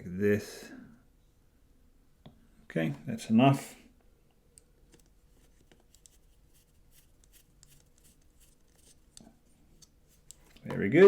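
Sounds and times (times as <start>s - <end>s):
small ticks of handling parts: 4.5s - 10.7s.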